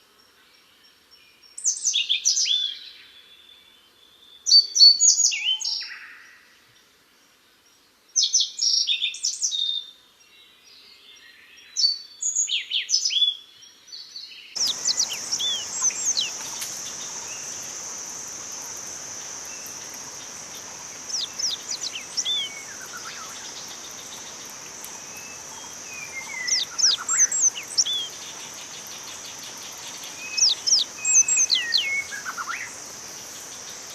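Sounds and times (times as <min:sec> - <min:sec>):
songbird whistling: 0:14.6 - 0:32.8
high-pitched hiss: 0:14.6 - 0:33.9.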